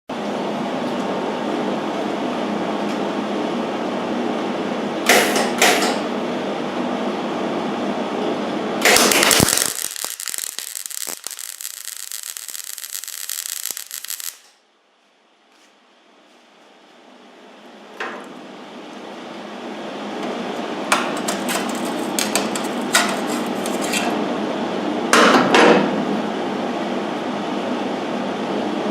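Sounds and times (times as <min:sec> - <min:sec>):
welder arc crackling and buzzing: 0:08.8 - 0:14.6, 0:20.5 - 0:24.1
sharp pops: 0:08.9 - 0:14.5.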